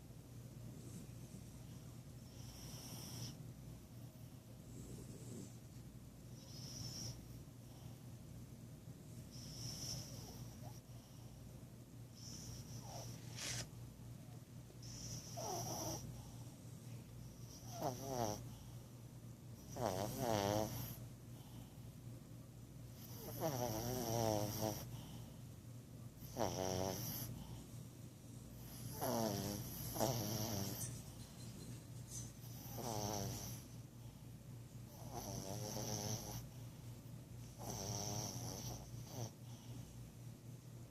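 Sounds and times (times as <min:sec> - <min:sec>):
small dog snoring: 0:02.2 - 0:03.4, 0:04.6 - 0:05.7, 0:06.4 - 0:08.0, 0:09.3 - 0:11.3, 0:12.2 - 0:13.7, 0:14.8 - 0:16.4, 0:17.3 - 0:18.7, 0:19.6 - 0:21.7, 0:22.9 - 0:25.3, 0:26.2 - 0:27.6, 0:28.6 - 0:31.2, 0:32.4 - 0:33.8, 0:34.9 - 0:36.6, 0:37.4 - 0:39.8.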